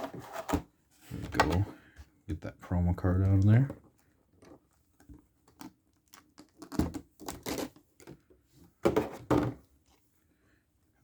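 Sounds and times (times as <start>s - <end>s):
cardboard and plastic rustling: 0.0s - 1.8s.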